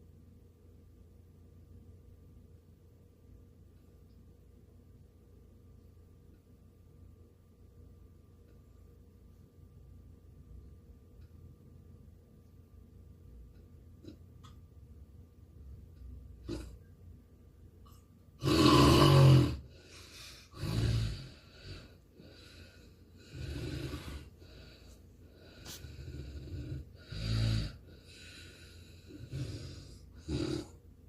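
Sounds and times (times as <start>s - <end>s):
man snoring: 18.4s - 24.7s, 25.5s - 30.8s.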